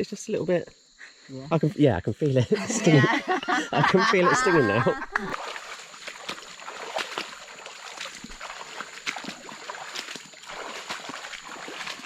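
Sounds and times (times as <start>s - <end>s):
water splashes and drips: 5.1s - 12.0s.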